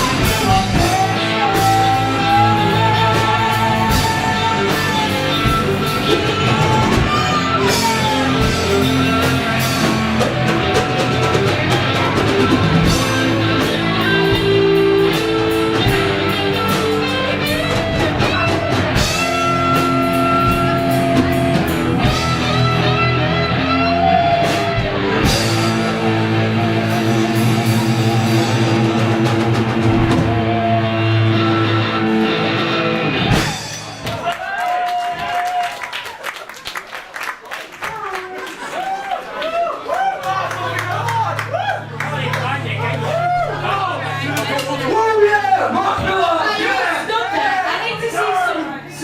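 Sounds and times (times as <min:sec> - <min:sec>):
electric guitar lead notes: 0:00.0 - 0:34.0
bass guitar: 0:00.0 - 0:34.6, 0:39.6 - 0:47.9
drum kit: 0:00.0 - 0:35.5.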